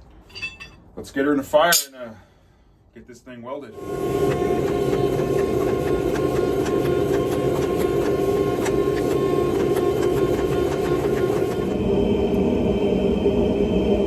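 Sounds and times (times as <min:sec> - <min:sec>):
forge rushing roar: 0:03.8 - 0:14.0
low hum: 0:03.8 - 0:14.0.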